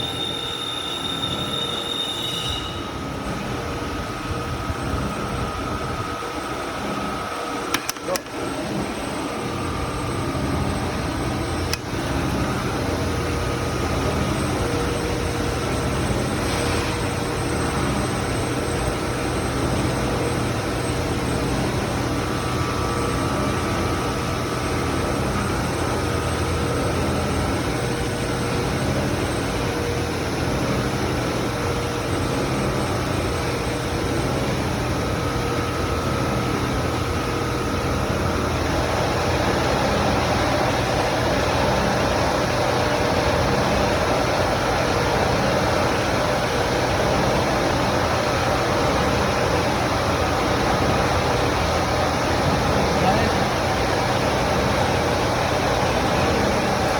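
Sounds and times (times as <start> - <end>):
drilling machine motor running: 7.6 - 56.9
sharp click: 7.7 - 8.4.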